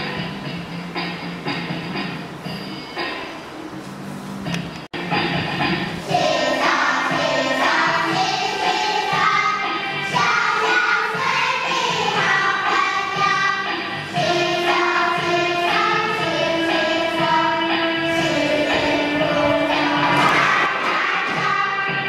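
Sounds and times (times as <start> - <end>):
musical accompaniment: 0.0 - 22.0
children singing: 6.0 - 22.0.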